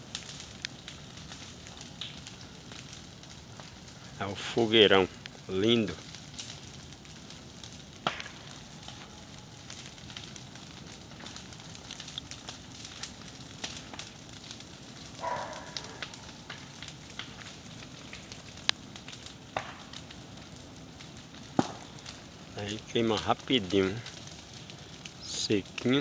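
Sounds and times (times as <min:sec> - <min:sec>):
bonfire crackling and popping: 0:00.0 - 0:26.0.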